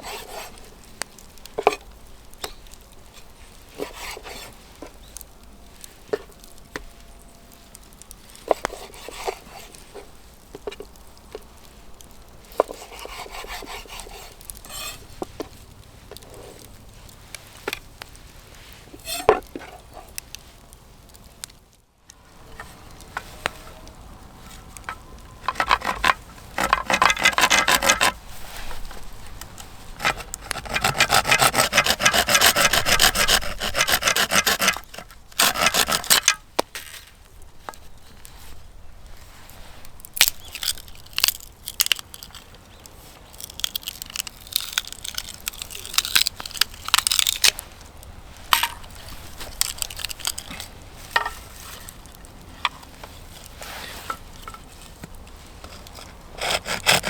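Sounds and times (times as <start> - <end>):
wood scraping rhythmically: 3.7 - 4.5, 12.6 - 15.0, 24.6 - 28.8, 30.0 - 36.4, 55.9 - 57.0.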